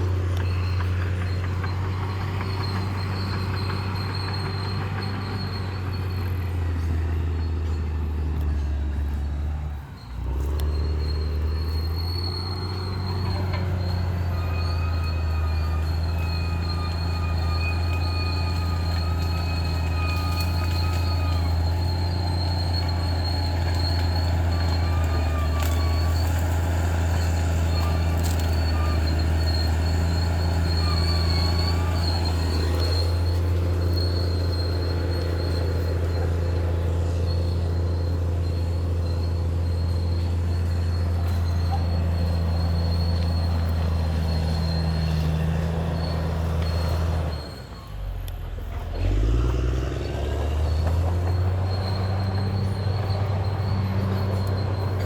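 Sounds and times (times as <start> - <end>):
bulldozer diesel engine running: 0.0 - 55.0
high thin squealing: 9.7 - 47.9.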